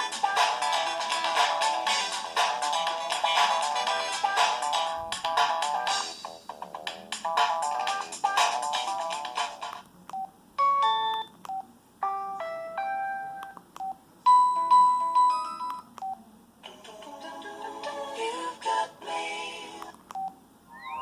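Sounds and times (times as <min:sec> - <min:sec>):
polyphonic ringtone melody: 0:00.0 - 0:06.4, 0:12.0 - 0:13.6, 0:20.7 - 0:21.0
short phone beep: 0:20.2 - 0:21.0
synthesized chime jingles: 0:20.7 - 0:21.0.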